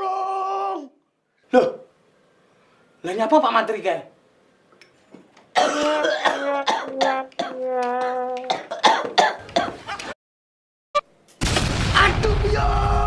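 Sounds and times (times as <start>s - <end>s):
man coughing: 5.6s - 7.6s, 8.5s - 9.8s.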